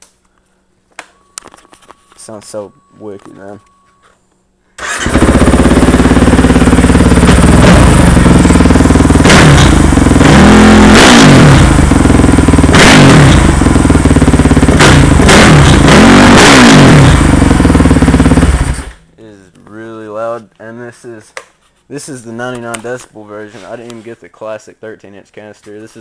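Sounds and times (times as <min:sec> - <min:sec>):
quad engine revving: 0:04.8 - 0:19.0.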